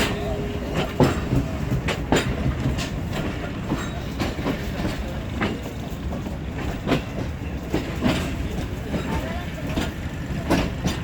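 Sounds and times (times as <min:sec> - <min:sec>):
train rumble: 0:00.0 - 0:11.0
wheels clacking over rail joints: 0:00.0 - 0:11.0.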